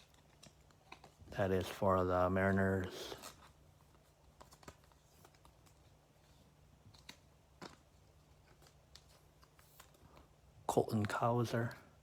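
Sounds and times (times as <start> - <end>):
low electrical hum: 0.0 - 12.0.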